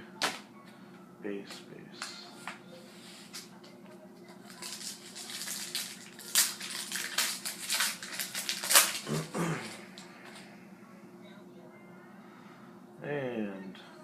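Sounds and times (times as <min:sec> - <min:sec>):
foil wrapper crinkling and tearing: 0:04.5 - 0:10.0.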